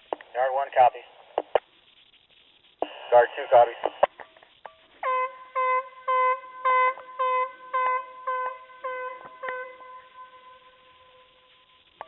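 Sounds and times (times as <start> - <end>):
warning horn short blasts: 5.0 - 11.7.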